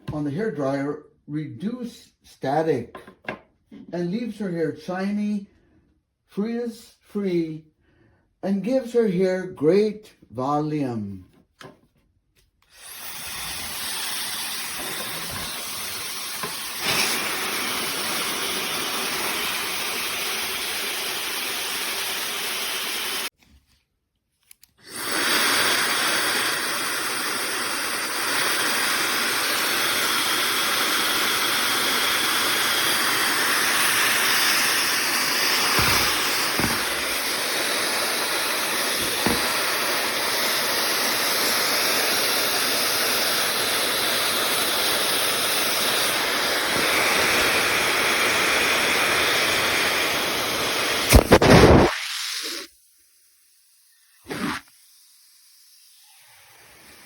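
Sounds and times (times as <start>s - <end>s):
hair dryer blowing air: 12.6s - 23.3s, 24.8s - 52.7s, 54.1s - 54.7s, 55.4s - 57.0s.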